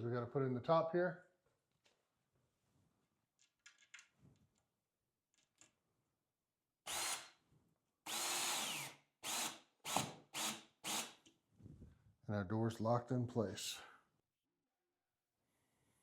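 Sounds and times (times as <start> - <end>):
power drill driving screws: 6.9 - 7.4, 8.1 - 11.2.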